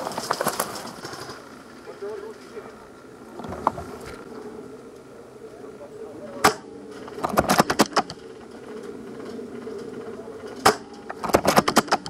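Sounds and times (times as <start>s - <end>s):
steady low drone: 0.8s - 12.0s
airsoft gun shots: 6.4s - 8.2s, 10.6s - 12.0s.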